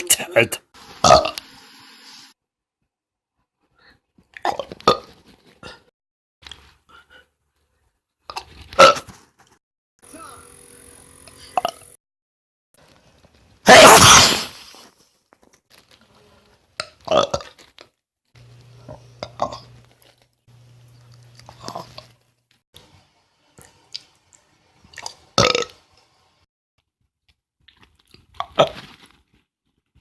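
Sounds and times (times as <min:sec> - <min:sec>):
person burping: 0:25.4 - 0:25.7.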